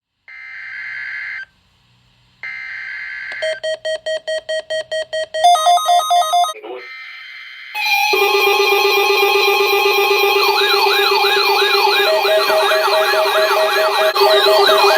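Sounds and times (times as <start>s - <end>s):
electronic beeps: 3.3s - 14.9s
loud steady alert tone: 5.5s - 14.9s.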